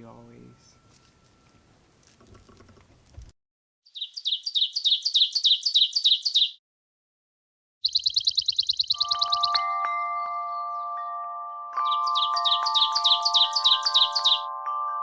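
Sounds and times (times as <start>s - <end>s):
bird trilling high chirps: 3.9s - 6.6s, 7.8s - 9.8s, 11.8s - 14.5s.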